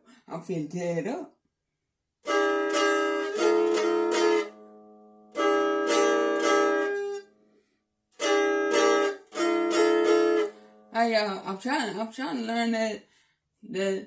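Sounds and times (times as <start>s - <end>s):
guitar chords strummed: 2.2s - 7.4s, 8.2s - 11.0s.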